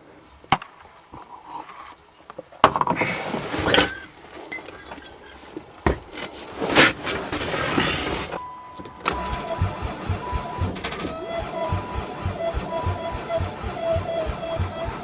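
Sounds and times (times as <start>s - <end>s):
starter motor cranking engine: 7.9s - 15.0s.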